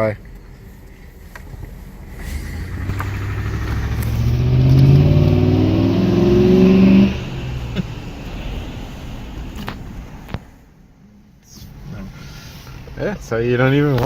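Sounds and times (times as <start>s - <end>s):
car engine revving and misfiring: 2.0s - 10.4s.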